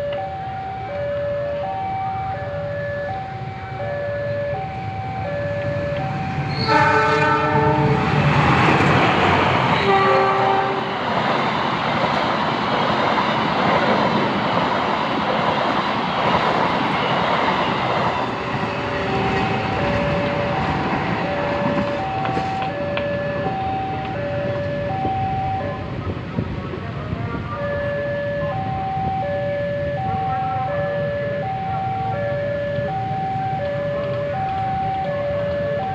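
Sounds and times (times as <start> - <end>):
two-tone electronic warning alarm: 0.0 - 8.0, 17.5 - 26.0, 27.5 - 35.9
train wheels rumbling on rail: 0.0 - 35.9.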